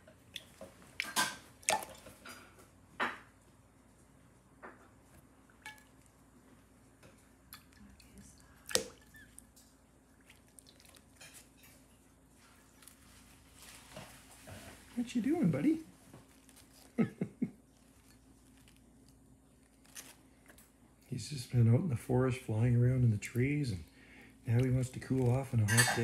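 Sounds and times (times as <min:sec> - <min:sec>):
bird splashing in water: 0:00.3 - 0:02.2, 0:07.6 - 0:09.2, 0:10.2 - 0:11.4.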